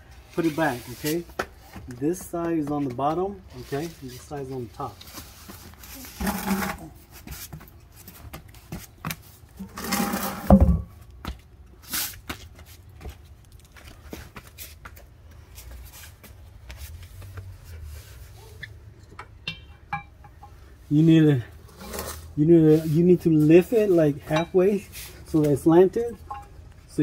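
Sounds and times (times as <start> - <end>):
heavy thump: 10.4 - 11.0
tire and metal holder handling: 18.4 - 20.8, 23.4 - 26.9.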